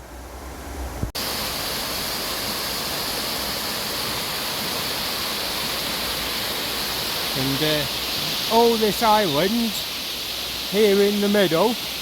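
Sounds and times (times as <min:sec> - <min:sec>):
river water rushing over a weir: 0:00.0 - 0:12.0.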